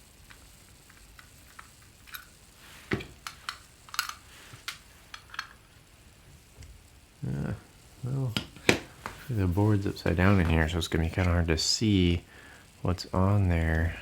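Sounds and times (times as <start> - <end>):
metal clicks and clinks: 3.2 - 4.2.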